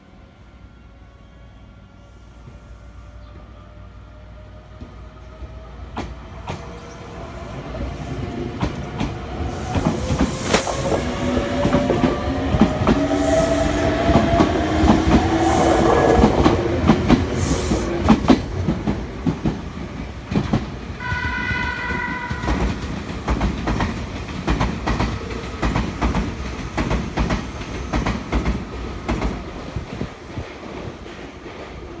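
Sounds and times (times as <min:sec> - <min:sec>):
air hissing: 0:09.5 - 0:11.7, 0:17.3 - 0:18.1
train horn: 0:21.0 - 0:23.1.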